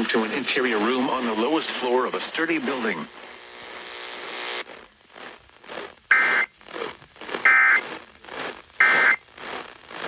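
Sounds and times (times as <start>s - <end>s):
crackling static hiss: 0.0s - 10.0s
buzzing digital data tones: 6.1s - 6.6s, 7.4s - 7.9s, 8.8s - 9.4s.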